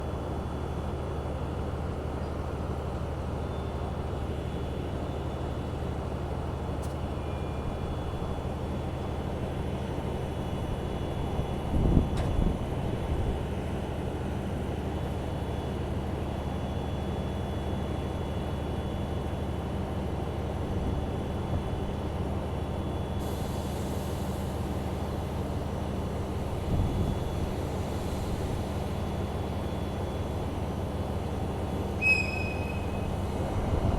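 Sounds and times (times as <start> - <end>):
locomotive low drone: 30.0 - 33.9.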